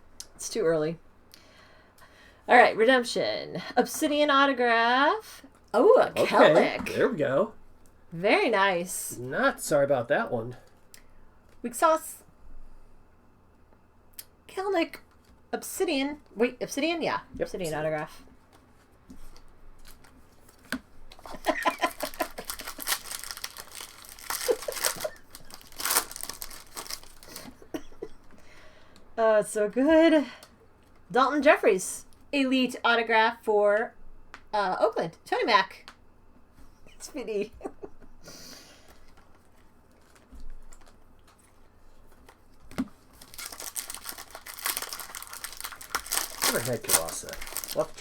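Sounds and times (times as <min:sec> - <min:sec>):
plastic wrappers tearing and crinkling: 0:19.8 - 0:27.6, 0:39.4 - 0:41.4, 0:43.0 - 0:48.0.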